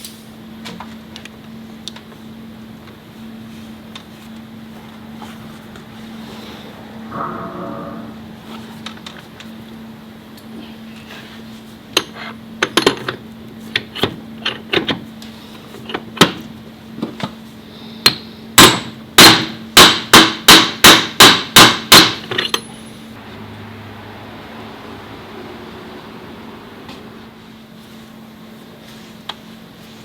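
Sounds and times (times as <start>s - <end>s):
hammer strikes: 7.1s - 8.3s.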